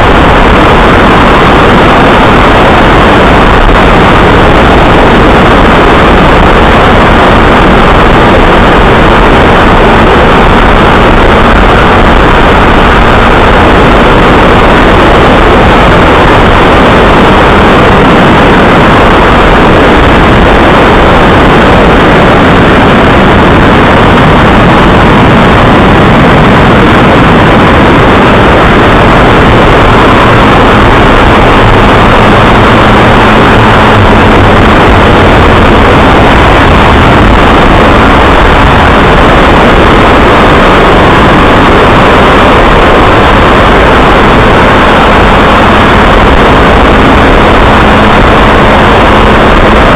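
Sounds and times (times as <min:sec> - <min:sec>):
wind rush on microphone: 0:00.0 - 0:49.9.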